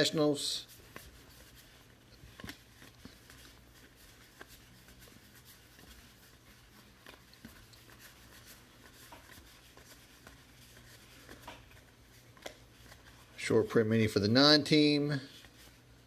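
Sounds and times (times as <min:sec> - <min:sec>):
trading cards being flipped: 0:00.7 - 0:13.4.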